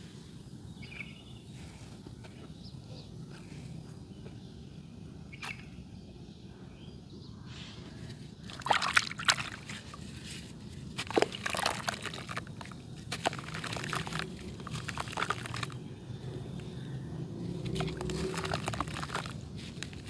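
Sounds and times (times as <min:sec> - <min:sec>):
crumbs falling and trickling: 0:08.4 - 0:16.9, 0:17.6 - 0:20.0
dry clay crumbling and crunching: 0:08.5 - 0:15.9, 0:17.6 - 0:20.0.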